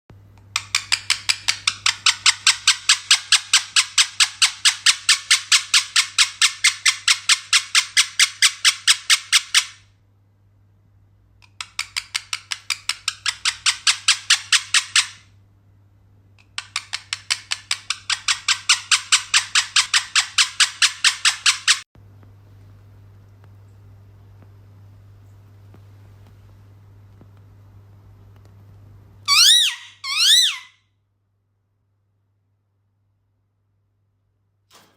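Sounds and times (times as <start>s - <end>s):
parrot scratchy calls: 0.6s - 9.8s, 11.6s - 15.3s, 16.4s - 21.8s, 29.3s - 30.8s.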